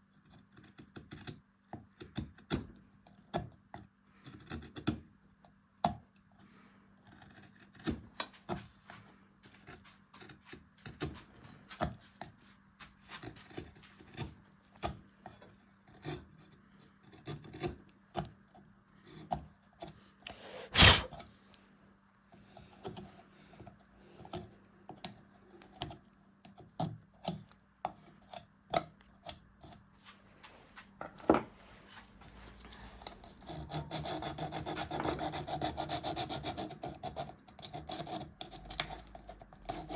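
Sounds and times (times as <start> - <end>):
carving tool cutting wood: 0.0 - 5.2, 7.0 - 8.6, 15.9 - 21.2, 32.5 - 39.9.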